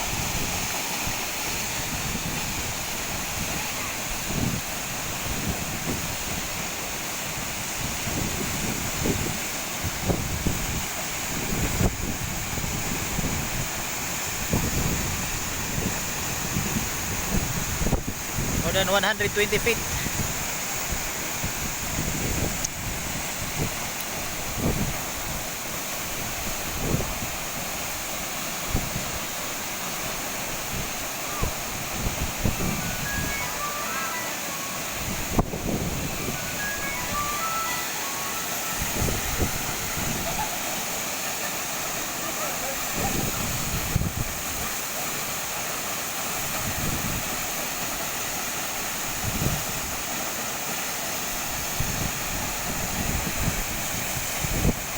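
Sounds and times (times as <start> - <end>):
waterfall rushing: 0.0 - 54.9
wind bumps on microphone: 0.1 - 6.5, 7.3 - 18.8, 19.6 - 25.5, 26.1 - 27.4, 30.6 - 33.4, 34.9 - 37.3, 38.8 - 40.5, 42.9 - 44.7, 46.4 - 47.4, 49.1 - 49.9, 51.6 - 54.9.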